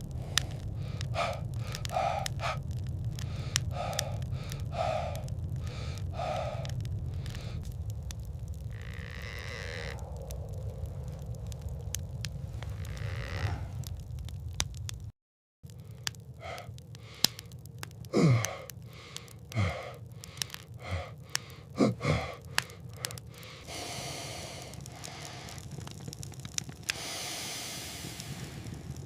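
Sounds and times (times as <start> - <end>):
steady hiss: 0.0 - 13.6, 15.8 - 29.0
crackling clicks: 0.0 - 15.1, 15.7 - 29.0
man gasping and groaning: 0.2 - 7.6, 16.3 - 25.6.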